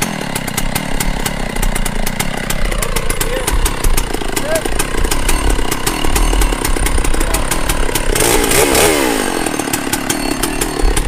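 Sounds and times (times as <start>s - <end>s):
chainsaw engine revving: 0.0s - 11.0s.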